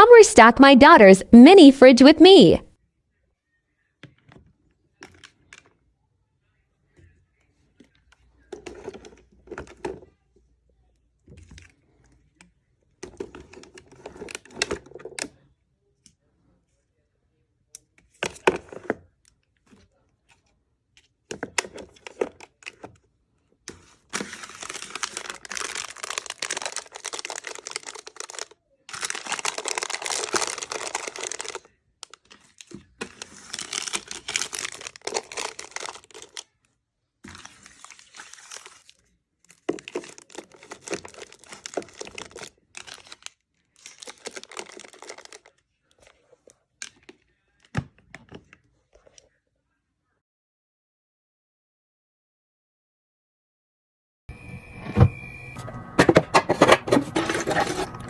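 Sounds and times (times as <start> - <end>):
packaging crinkled and torn: 24.1 - 36.6, 37.3 - 47.1.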